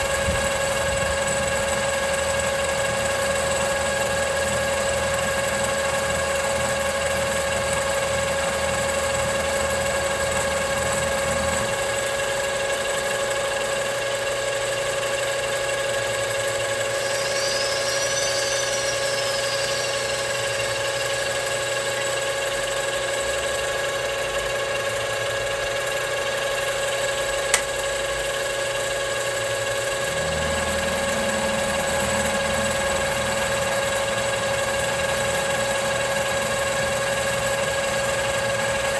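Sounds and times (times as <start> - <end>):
sharp click: 27.5 - 27.8.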